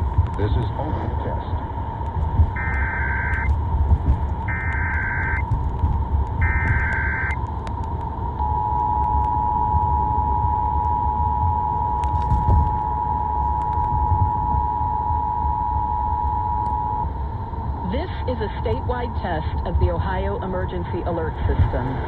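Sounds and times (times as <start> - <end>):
low rumble: 0.0 - 22.0
data burst tones: 2.4 - 3.5, 4.4 - 5.6, 6.4 - 7.4
two-tone attention signal: 2.6 - 3.5, 4.5 - 5.4, 6.4 - 7.4, 8.4 - 17.1.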